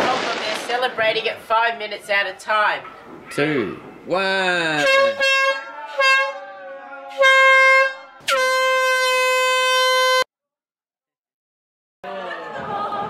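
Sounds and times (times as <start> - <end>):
air horn blasting: 4.7 - 10.3.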